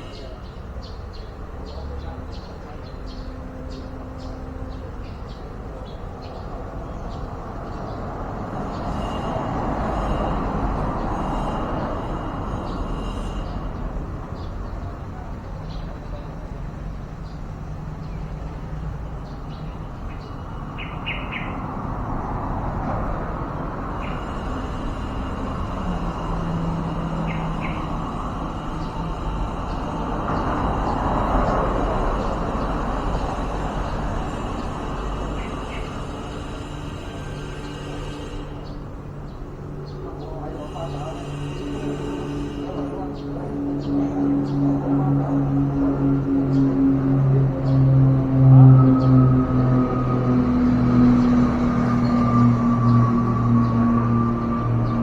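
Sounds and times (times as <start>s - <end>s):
passing vehicle road noise: 0.0s - 55.0s
steady low hum: 21.5s - 55.0s.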